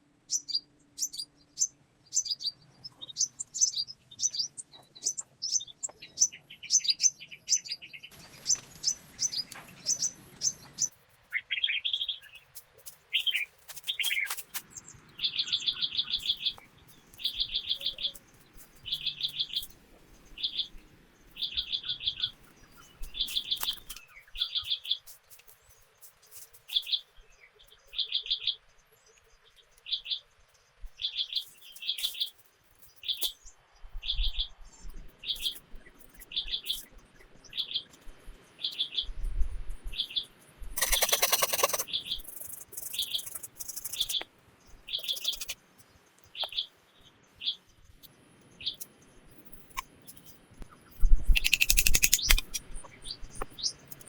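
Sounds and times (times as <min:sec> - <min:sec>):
birds chirping: 0:00.3 - 0:12.5, 0:13.1 - 0:25.0, 0:40.0 - 0:54.0
bird repeating trilled note: 0:40.8 - 0:44.1, 0:51.3 - 0:52.6.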